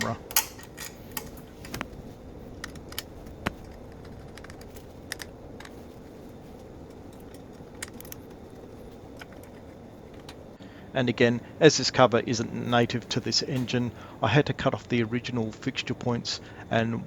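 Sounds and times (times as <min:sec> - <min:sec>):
metallic clicks and taps of tools: 0:00.0 - 0:01.9, 0:02.6 - 0:05.8, 0:06.8 - 0:10.4
low background noise: 0:00.0 - 0:17.0.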